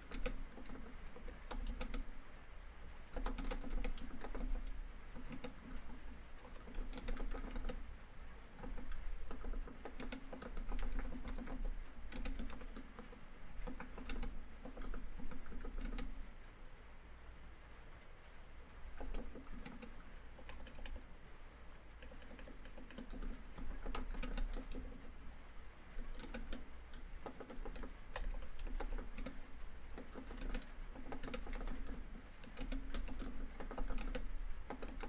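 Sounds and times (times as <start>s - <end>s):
laptop keyboard typing: 0.0s - 2.1s, 3.1s - 7.9s, 8.5s - 16.2s, 18.7s - 21.2s, 22.0s - 35.0s
rain on a tin roof: 16.0s - 22.0s.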